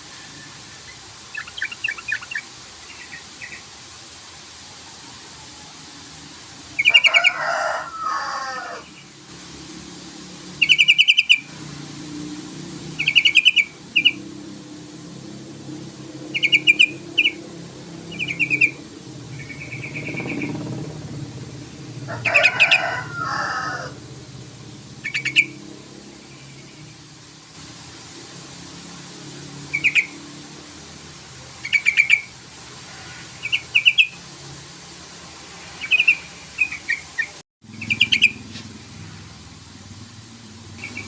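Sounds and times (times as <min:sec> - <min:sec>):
bulbul chattering calls: 0:10.6 - 0:11.5, 0:13.0 - 0:14.2, 0:16.3 - 0:17.4, 0:18.1 - 0:20.6, 0:25.0 - 0:25.6, 0:31.6 - 0:32.3, 0:35.8 - 0:38.6.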